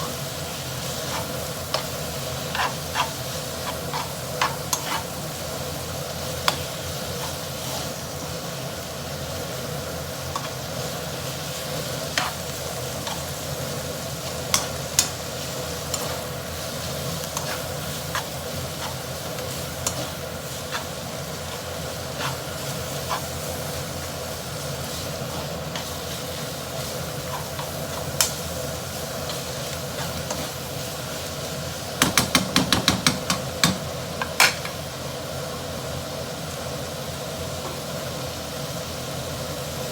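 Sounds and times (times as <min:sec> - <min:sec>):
noodles sizzling in a pan: 0:00.0 - 0:39.9
utensil clicking against pan: 0:32.0 - 0:34.8.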